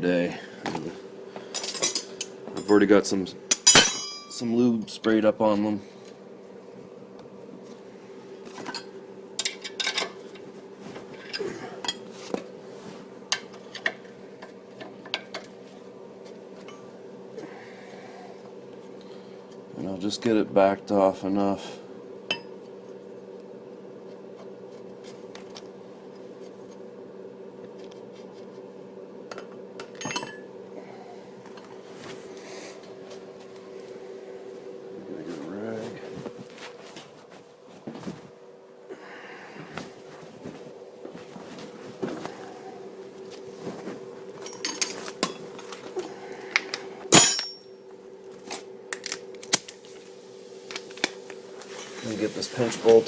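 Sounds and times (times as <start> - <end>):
steady low hum: 0.0 - 53.0
metal tools clinking and tapping: 1.5 - 2.8, 3.5 - 4.6, 8.7 - 10.2, 29.8 - 30.4, 44.4 - 45.4, 47.1 - 47.7
sharp metal clinks: 3.6 - 4.6, 47.1 - 47.7.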